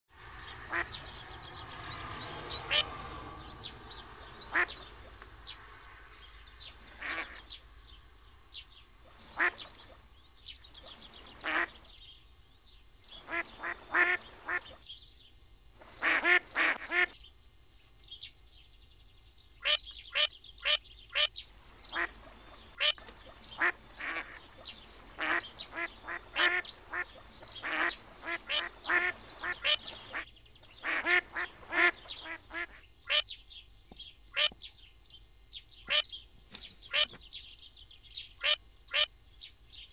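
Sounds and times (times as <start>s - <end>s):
duck quacking: 0.6s - 1.2s, 2.5s - 3.2s, 4.2s - 5.2s, 6.9s - 7.5s, 9.0s - 10.0s, 10.8s - 11.9s, 13.2s - 14.8s, 15.8s - 17.2s, 19.6s - 33.2s, 34.4s - 34.6s, 35.9s - 36.2s, 36.8s - 37.2s, 38.4s - 39.1s.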